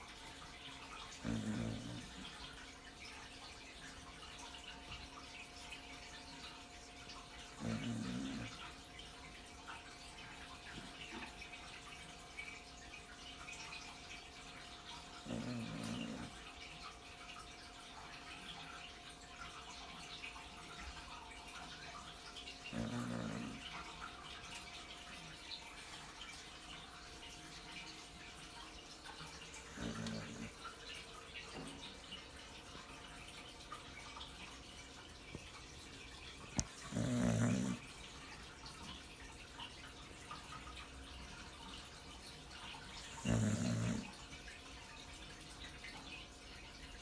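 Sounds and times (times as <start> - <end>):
dog snoring: 0.4 - 2.9, 7.2 - 9.1, 14.7 - 16.9, 22.2 - 25.0, 29.1 - 32.2, 35.8 - 39.0, 42.8 - 44.4.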